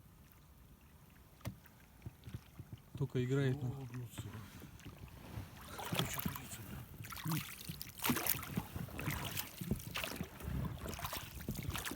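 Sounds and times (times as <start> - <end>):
fish splashing water: 5.6 - 11.9.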